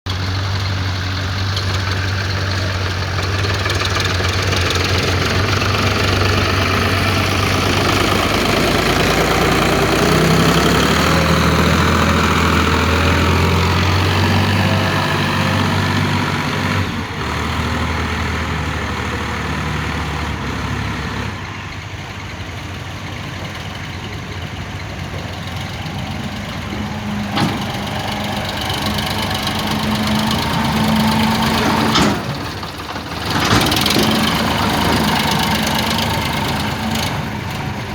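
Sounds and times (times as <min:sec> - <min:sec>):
engine running: 0:00.1 - 0:37.9.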